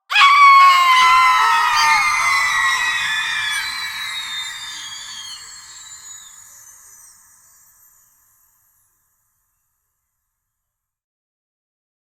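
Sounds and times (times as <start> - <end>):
high-pitched scream reverberating: 0.0 - 7.8.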